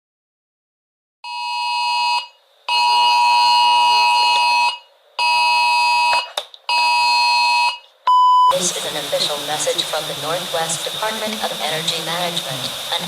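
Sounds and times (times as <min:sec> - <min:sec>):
electronic alarm tone blasts: 0:01.2 - 0:08.8.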